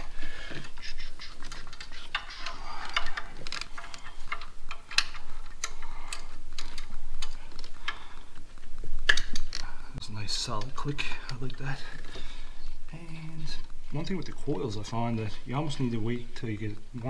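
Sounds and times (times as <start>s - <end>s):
rubber and plastic rubbing: 0.0s - 9.7s
small clicks and knocks: 0.0s - 9.7s.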